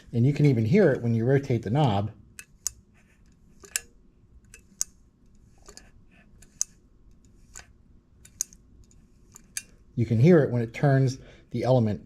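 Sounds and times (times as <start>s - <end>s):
thermostat clicking: 1.8s - 9.8s.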